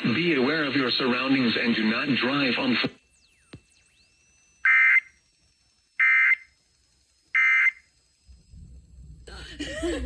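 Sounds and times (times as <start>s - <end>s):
shrill buzzy digital data tones: 1.8s - 9.2s.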